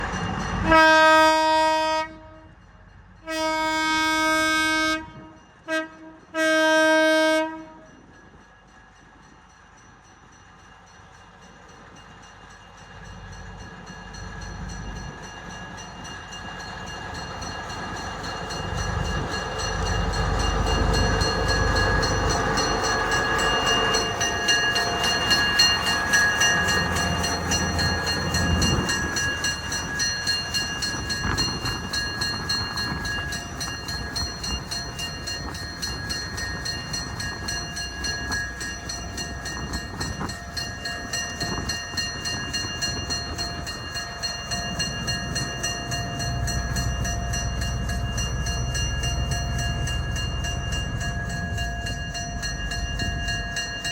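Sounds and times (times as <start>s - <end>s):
train rumble: 0.0s - 53.9s
wheels clicking on rail joints: 11.5s - 53.9s.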